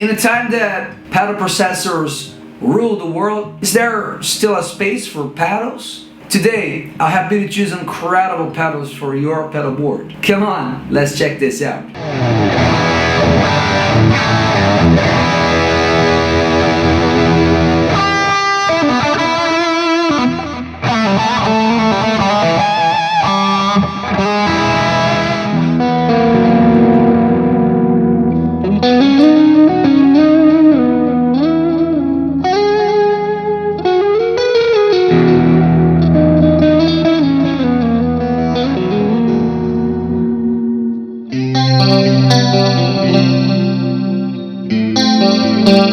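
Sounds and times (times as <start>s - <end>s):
distorted electric guitar: 10.0s - 45.9s.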